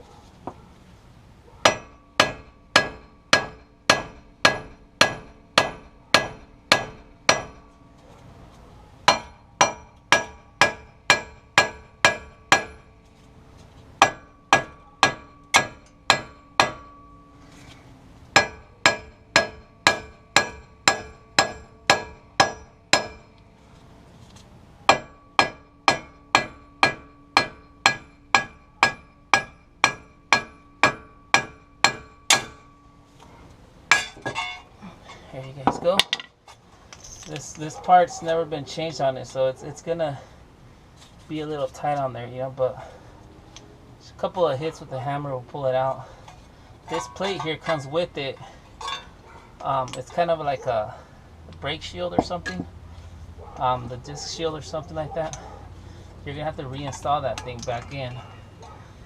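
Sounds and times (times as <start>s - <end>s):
hammer striking metal hub: 1.6s - 7.8s, 9.1s - 12.9s, 14.0s - 17.3s, 18.4s - 23.4s, 24.9s - 32.8s, 33.9s - 34.7s, 46.9s - 49.1s, 56.8s - 58.3s.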